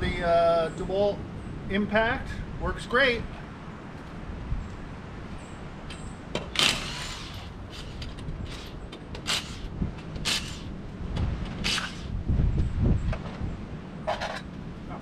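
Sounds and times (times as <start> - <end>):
impact wrench bursts: 6.4 - 10.7, 11.6 - 12.2.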